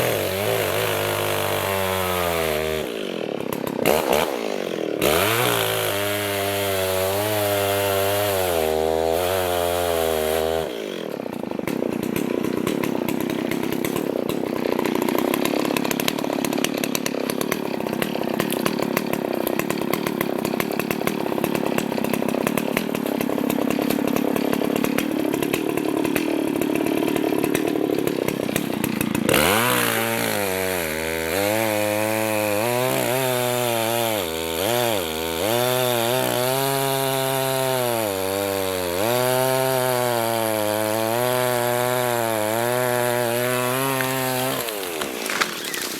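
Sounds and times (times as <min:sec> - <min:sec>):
chainsaw cutting wood: 0:00.0 - 0:45.9.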